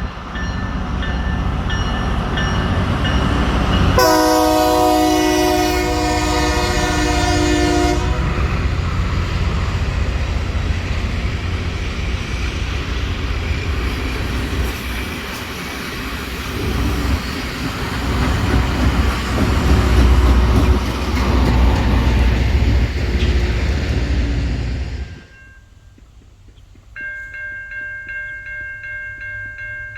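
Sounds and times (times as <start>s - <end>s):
passing train rumble: 0.0s - 25.6s
locomotive air horn chord: 4.0s - 8.6s.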